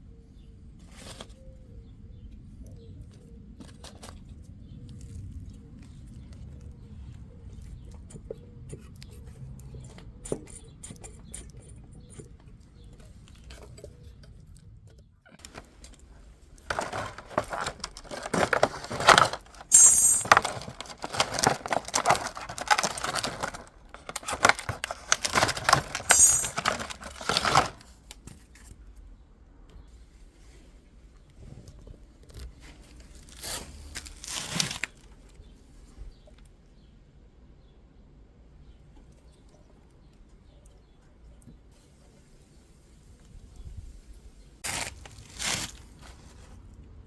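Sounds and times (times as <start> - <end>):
metal tools clinking and rattling: 16.6 - 27.8.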